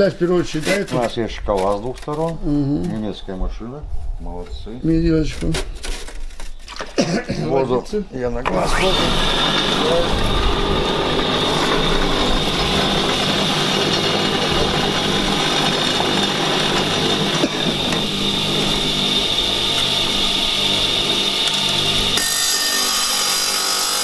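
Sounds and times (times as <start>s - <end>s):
wet tile saw cutting tile: 8.5s - 24.0s.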